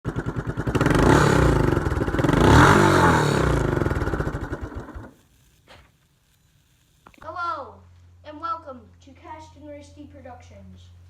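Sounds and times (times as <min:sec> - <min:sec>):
lawn mower engine revving: 0:00.0 - 0:05.2.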